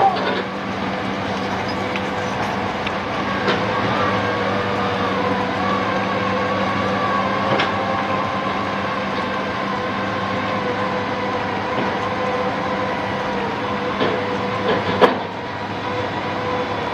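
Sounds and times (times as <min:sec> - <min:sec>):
wavering high whine: 0:00.0 - 0:16.3
drilling rig engine drone: 0:00.0 - 0:16.9.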